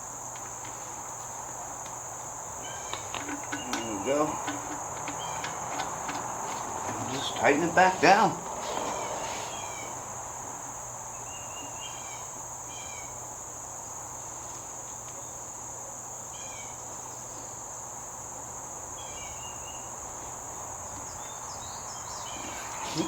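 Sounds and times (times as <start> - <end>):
insect trilling: 1.0 - 10.6, 21.7 - 23.0.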